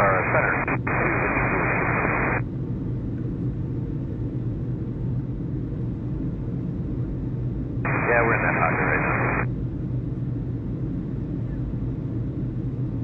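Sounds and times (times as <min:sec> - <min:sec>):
radio receiver hiss: 0:00.0 - 0:02.4, 0:07.9 - 0:09.5
steady low rumble: 0:00.0 - 0:13.0.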